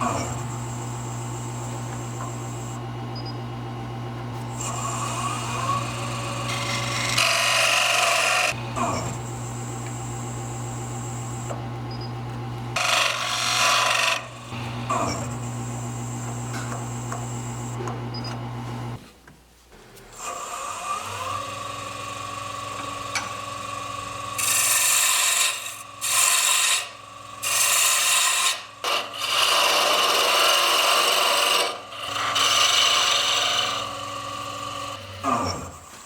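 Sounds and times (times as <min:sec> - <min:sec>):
wood lathe motor running: 0:00.0 - 0:19.0, 0:29.2 - 0:35.0
tool scraping spinning wood: 0:04.4 - 0:11.6.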